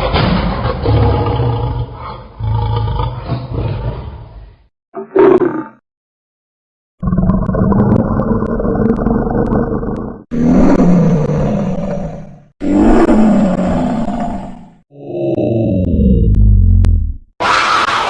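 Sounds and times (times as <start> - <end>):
lion roaring: 7.0 - 18.0.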